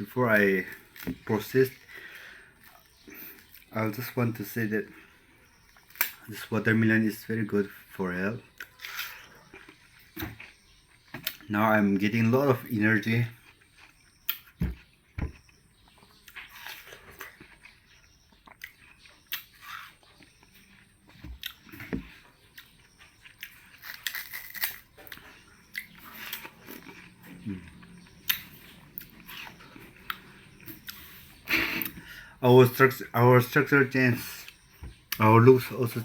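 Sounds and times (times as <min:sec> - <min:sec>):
person chewing watermelon: 0:00.5 - 0:04.2, 0:08.4 - 0:32.3.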